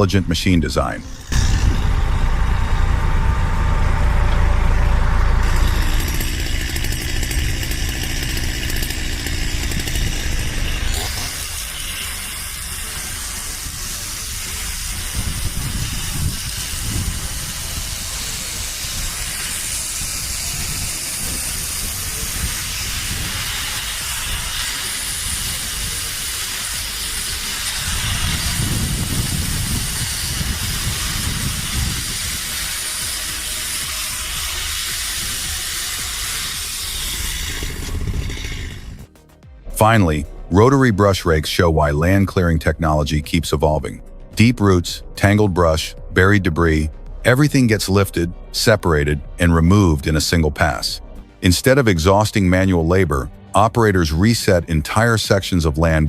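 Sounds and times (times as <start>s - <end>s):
heavy machinery engine rumble: 0.0s - 39.2s.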